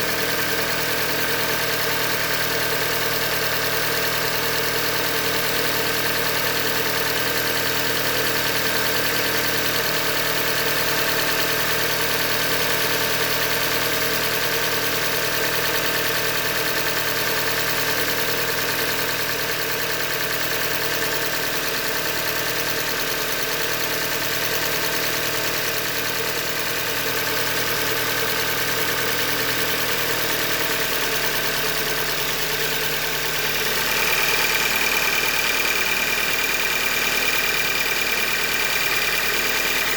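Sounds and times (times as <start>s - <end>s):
car engine running with knock: 0.0s - 39.9s.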